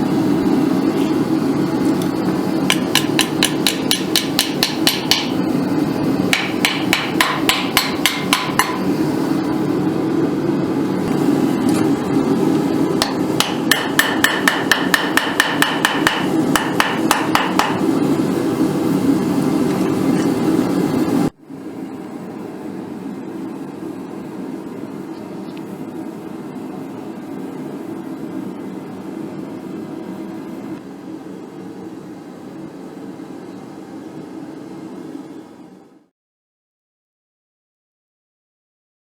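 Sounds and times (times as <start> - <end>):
gas forge roaring: 0.0 - 36.1
hammer striking hot steel wire: 2.6 - 5.4, 6.3 - 8.9, 13.0 - 17.9.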